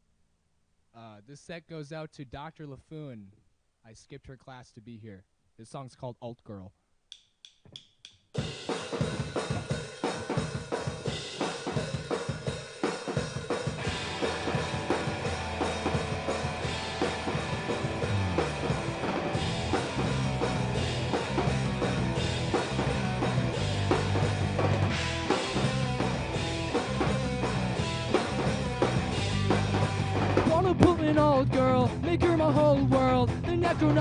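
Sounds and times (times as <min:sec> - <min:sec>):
drum kit: 0:07.7 - 0:34.0
bass guitar low notes: 0:13.8 - 0:34.0
electric guitar: 0:13.8 - 0:34.0.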